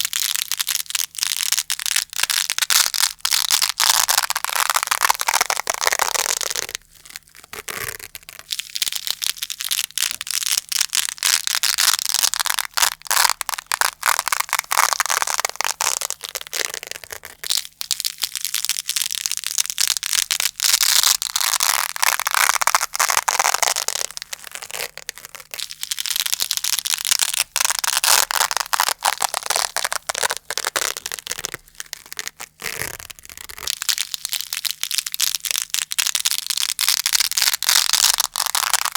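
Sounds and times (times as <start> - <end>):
velcro ripping apart: 0.0 - 38.9.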